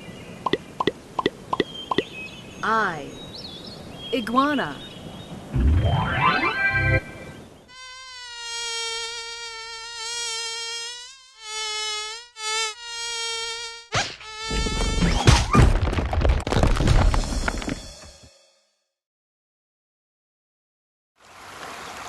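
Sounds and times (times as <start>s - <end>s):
insect buzzing: 7.7s - 15.2s.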